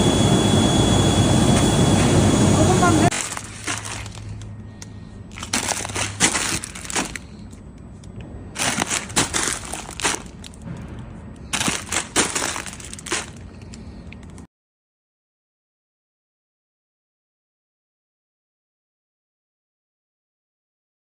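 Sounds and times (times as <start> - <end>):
steady low hum: 0.0 - 14.5
plastic granules crinkling and rattling: 3.1 - 7.6, 8.6 - 14.4.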